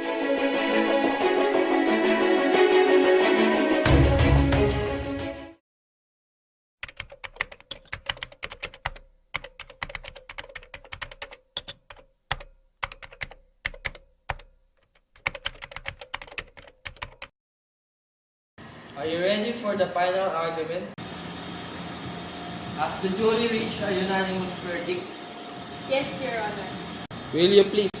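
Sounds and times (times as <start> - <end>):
keyboard typing: 6.8 - 17.3.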